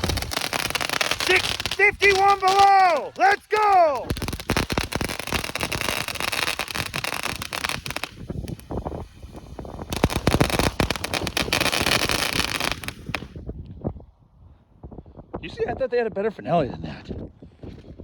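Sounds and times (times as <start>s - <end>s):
firework fountain crackling: 0.0s - 13.4s.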